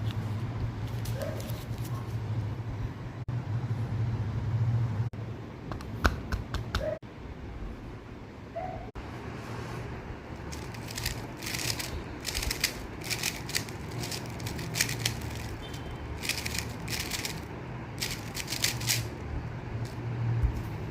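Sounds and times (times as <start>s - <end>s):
plastic puzzle cube clicking: 10.6s - 15.6s, 16.2s - 17.4s, 18.0s - 19.1s.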